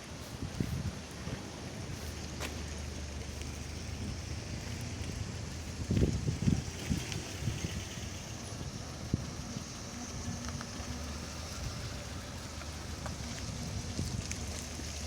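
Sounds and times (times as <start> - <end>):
vehicle engine hum: 0.0 - 15.0.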